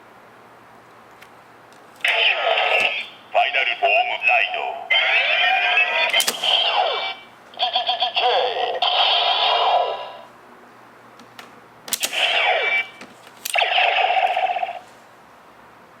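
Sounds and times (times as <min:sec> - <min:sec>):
toy belt electronic sound effects: 0:04.9 - 0:10.2, 0:12.0 - 0:14.8.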